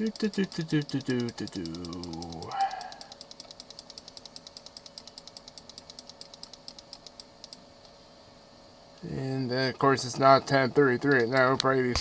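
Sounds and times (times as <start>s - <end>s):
rapid mechanical clicking: 0.0s - 7.7s.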